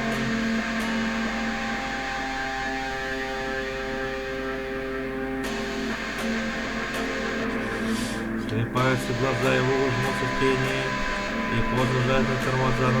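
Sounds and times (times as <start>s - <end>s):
guitar chords ringing: 0.0s - 13.0s
steady hum: 5.8s - 13.0s
person singing: 7.9s - 13.0s.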